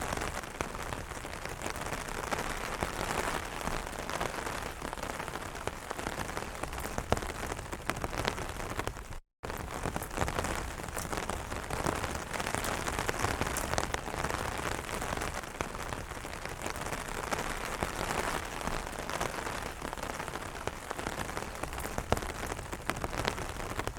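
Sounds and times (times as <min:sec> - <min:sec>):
rain on an umbrella: 0:00.0 - 0:23.9.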